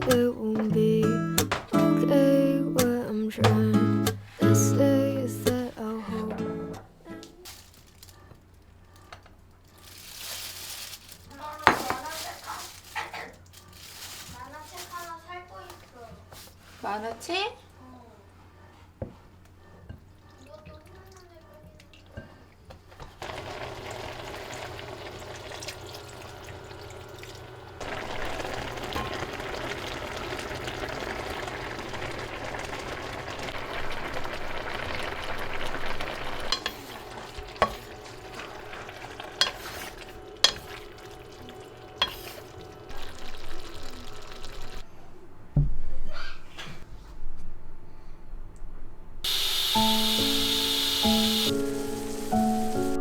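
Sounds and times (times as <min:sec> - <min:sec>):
food sizzling in a frying pan: 0:23.2 - 0:26.9, 0:27.8 - 0:44.8, 0:49.3 - 0:53.0.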